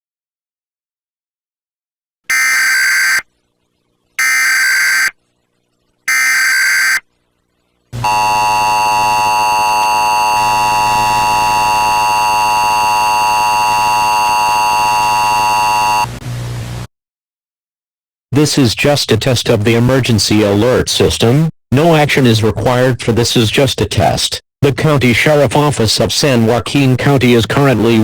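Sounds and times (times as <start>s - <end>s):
harsh digital data screech: 2.3s - 3.2s, 4.2s - 5.2s, 6.1s - 7.0s
two-tone attention signal: 2.3s - 3.2s, 4.2s - 5.2s, 6.1s - 7.0s, 8.0s - 16.1s.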